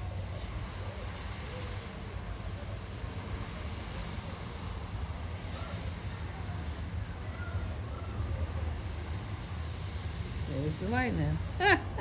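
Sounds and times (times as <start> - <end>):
low outdoor rumble: 0.0 - 12.0.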